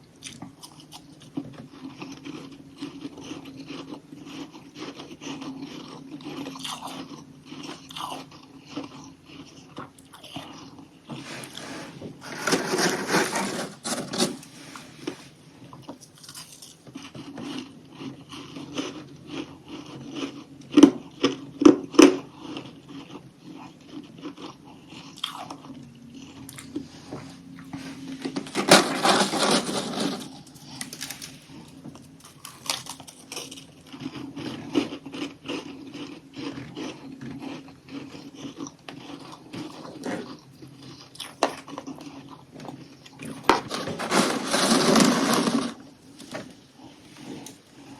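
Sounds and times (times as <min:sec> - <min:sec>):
crunchy frost chewing: 0:21.2 - 0:45.6.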